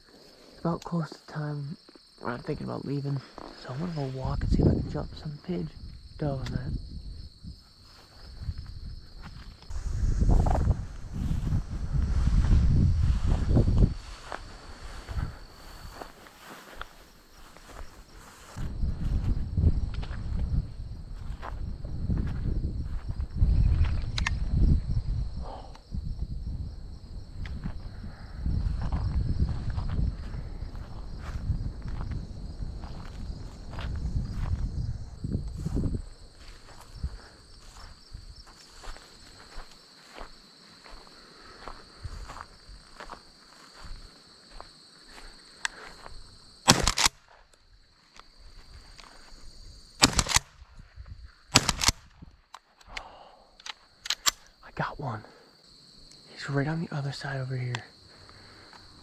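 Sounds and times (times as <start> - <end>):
footsteps outdoors: 0.0 - 24.6, 26.2 - 53.0, 57.3 - 59.0
crickets trilling: 0.0 - 59.0
shotgun shots with echo: 46.7 - 47.1, 50.0 - 50.4, 51.6 - 52.0.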